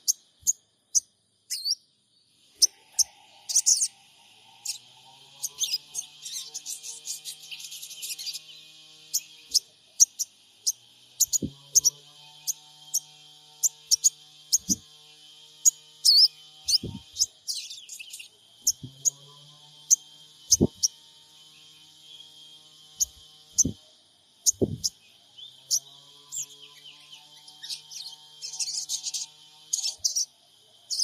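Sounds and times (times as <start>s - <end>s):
bird giving sharp high chirps: 0.0s - 1.8s, 9.1s - 14.8s, 15.6s - 19.2s, 19.9s - 21.0s, 23.0s - 23.8s, 24.4s - 25.0s
bird twittering: 0.0s - 1.8s, 2.6s - 4.0s, 4.6s - 14.9s, 15.6s - 21.0s, 23.0s - 23.8s, 24.4s - 30.3s.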